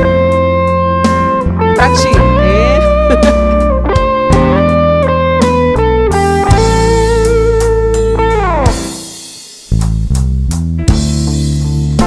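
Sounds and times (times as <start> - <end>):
bass and drums: 0.0 - 12.0
electric guitar bent notes: 1.8 - 4.6.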